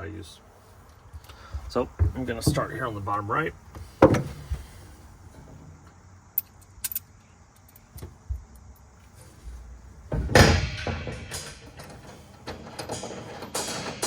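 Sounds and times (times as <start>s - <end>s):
dull thump: 3.9s - 4.7s, 9.5s - 11.6s
metallic clicks of bolt and washer: 6.4s - 8.8s.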